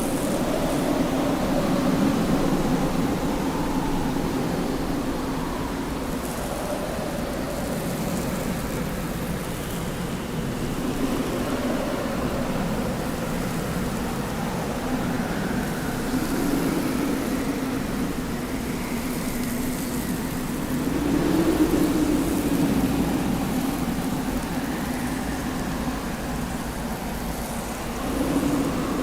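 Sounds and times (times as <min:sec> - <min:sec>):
wind blowing with low moan: 0:00.0 - 0:29.0.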